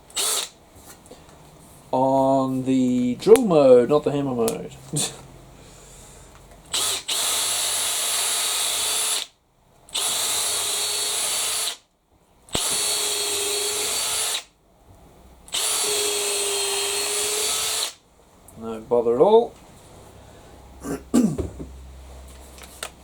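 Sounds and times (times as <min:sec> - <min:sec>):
cordless drill boring into hardwood: 0:00.1 - 0:00.6, 0:06.7 - 0:09.3, 0:09.9 - 0:11.8, 0:12.5 - 0:14.5, 0:15.5 - 0:18.0.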